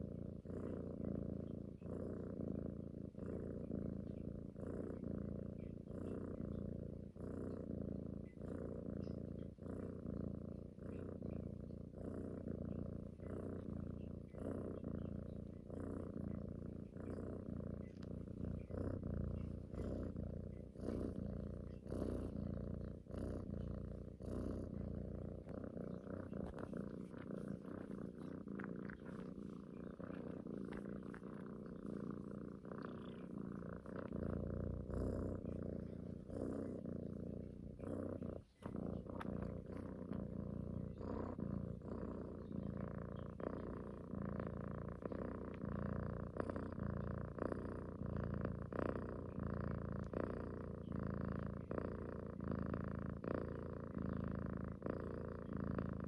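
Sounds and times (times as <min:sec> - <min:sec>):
cat purring: 0:00.0 - 0:56.0.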